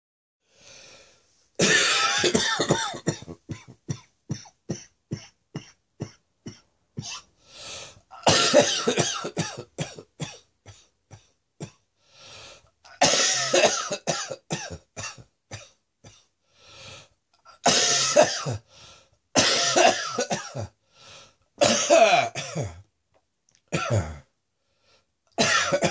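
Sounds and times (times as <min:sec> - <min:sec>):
drawn-in breaths: 0:00.4 - 0:01.4, 0:07.4 - 0:08.1, 0:12.0 - 0:12.7, 0:16.4 - 0:17.2, 0:18.7 - 0:19.2, 0:20.8 - 0:21.4
person coughing: 0:01.6 - 0:07.3, 0:08.2 - 0:11.8, 0:12.9 - 0:16.3, 0:17.7 - 0:18.6, 0:19.4 - 0:20.8, 0:21.6 - 0:22.8, 0:23.8 - 0:24.3, 0:25.4 - 0:25.9.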